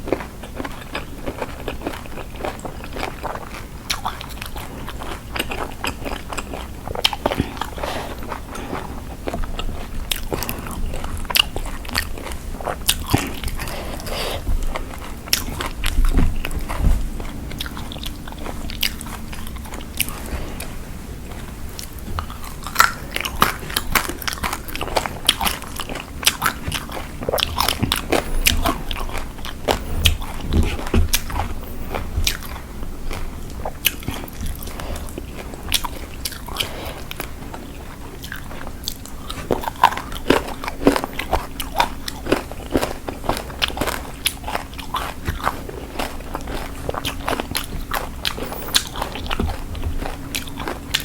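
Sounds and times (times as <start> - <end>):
biting and chewing crunches: 0.0 - 51.0
wet mouth clicks: 26.2 - 32.5.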